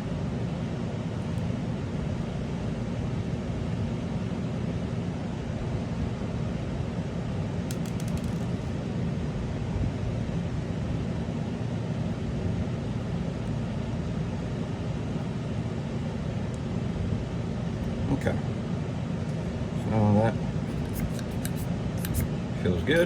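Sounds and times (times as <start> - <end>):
low room hum: 0.0 - 23.0
small parts clicking: 7.7 - 8.5, 20.7 - 22.2.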